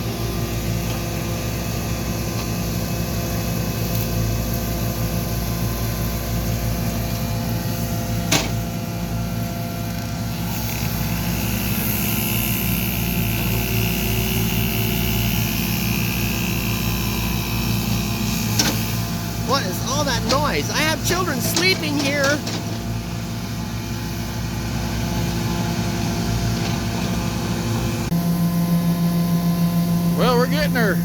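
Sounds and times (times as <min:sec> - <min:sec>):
excavator engine running: 0:16.1 - 0:28.4
higher whine: 0:18.3 - 0:22.8.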